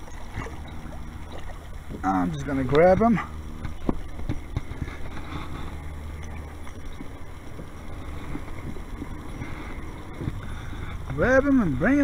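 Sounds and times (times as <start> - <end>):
wind rumbling on microphone: 0.0 - 12.0
faint knocks from kayak: 2.7 - 5.4.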